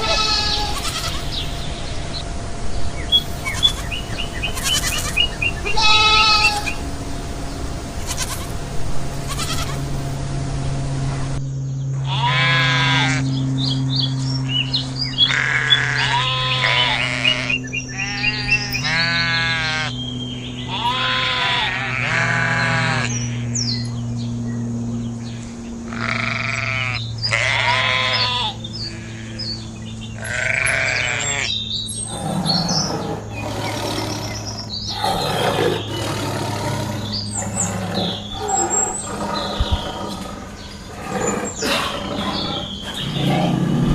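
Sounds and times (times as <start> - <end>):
quavering bleating: 0.0 - 1.5, 3.2 - 6.8, 8.0 - 8.6, 9.2 - 10.0, 12.0 - 13.4, 15.2 - 20.0, 20.7 - 23.6, 25.9 - 43.9
low hum: 0.0 - 27.5, 28.1 - 43.9.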